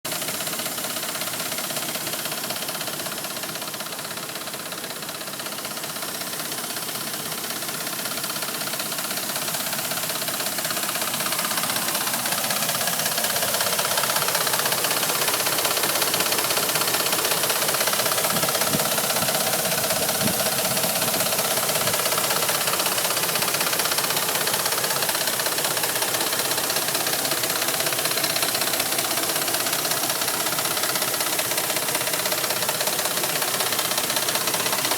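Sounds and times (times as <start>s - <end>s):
truck engine running with ticking: 0.1s - 34.9s.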